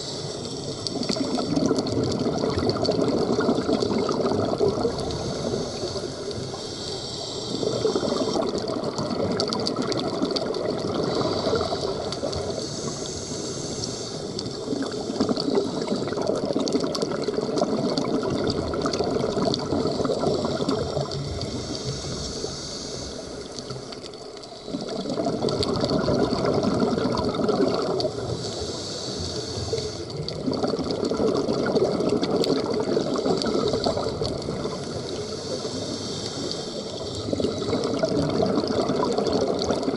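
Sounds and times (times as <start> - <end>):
regulator inhalation hiss: 0.0 - 1.9, 4.8 - 8.8, 11.0 - 16.4, 19.6 - 25.2, 28.0 - 30.3, 32.8 - 38.1
exhaled bubbles rushing: 0.7 - 6.6, 7.5 - 13.0, 14.3 - 22.0, 23.3 - 28.4, 30.0 - 35.8, 36.4 - 39.9.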